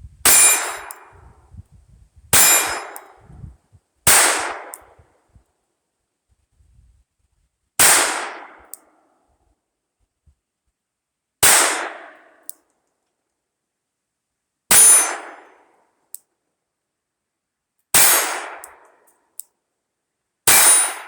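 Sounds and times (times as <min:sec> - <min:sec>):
pistol shots: 0:02.4 - 0:03.1, 0:04.1 - 0:04.9, 0:07.8 - 0:08.6, 0:11.4 - 0:12.1, 0:18.0 - 0:18.7, 0:20.5 - 0:21.0.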